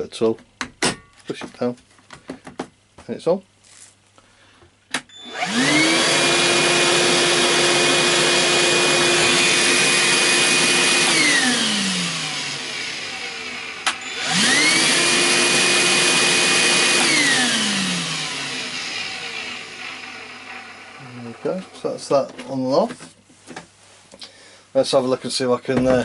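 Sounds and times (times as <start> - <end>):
vacuum motor whine: 5.1 - 22.1.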